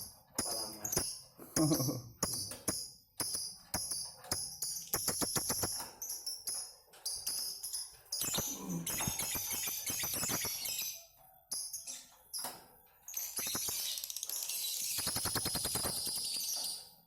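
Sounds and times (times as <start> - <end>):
low voice: 8.5 - 8.9.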